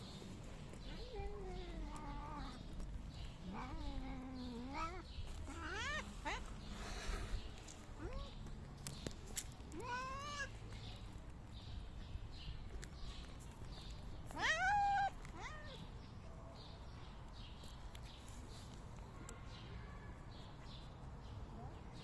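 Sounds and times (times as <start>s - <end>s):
kitten meowing: 14.3s - 15.8s.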